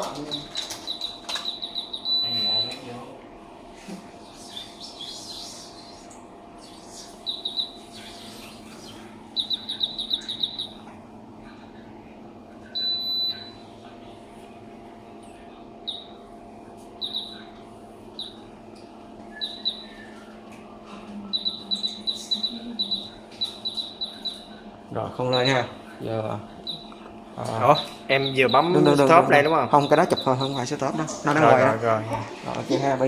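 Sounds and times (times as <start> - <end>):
low electrical hum: 0.0 - 33.0
small bird chirping: 0.1 - 2.8, 4.3 - 10.8, 15.8 - 16.2, 17.0 - 17.5, 18.2 - 18.5, 19.3 - 20.2, 21.3 - 24.6, 26.6 - 30.7.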